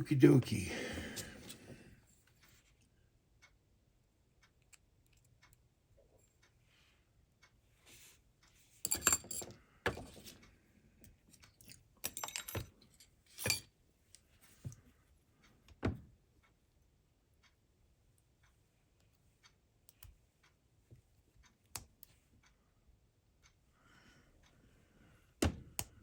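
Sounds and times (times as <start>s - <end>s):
small metal parts clinking: 8.9s - 10.3s, 11.3s - 13.7s.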